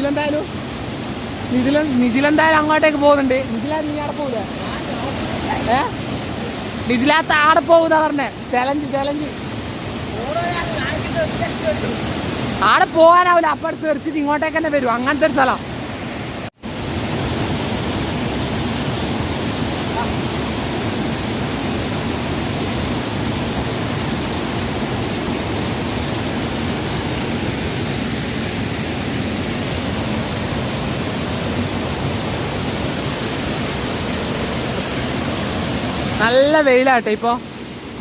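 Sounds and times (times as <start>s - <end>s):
waterfall rushing: 0.0s - 38.0s.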